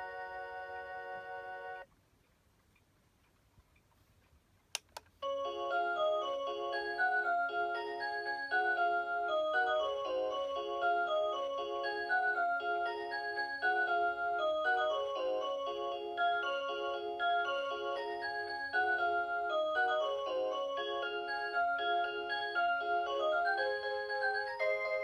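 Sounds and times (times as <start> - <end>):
alarm clock electronic melody: 5.2 - 25.0.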